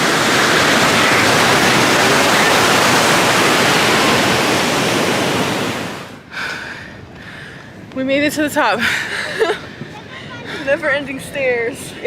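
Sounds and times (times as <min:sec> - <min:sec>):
ocean surf rushing: 0:00.0 - 0:06.4.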